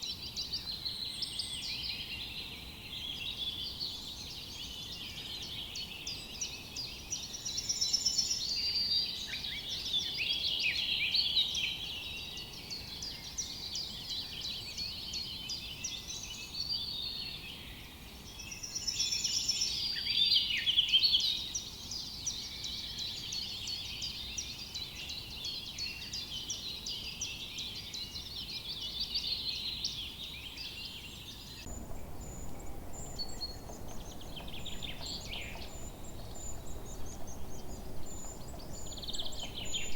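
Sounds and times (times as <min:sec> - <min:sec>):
songbirds chirping and trilling: 0:00.0 - 0:39.9
low rushing noise: 0:31.7 - 0:39.9.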